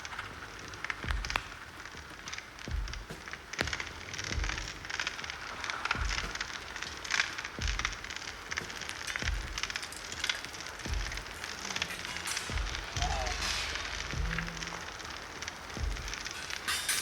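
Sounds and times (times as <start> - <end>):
crackling clicks: 0.0 - 17.0
low thud: 12.5 - 14.8.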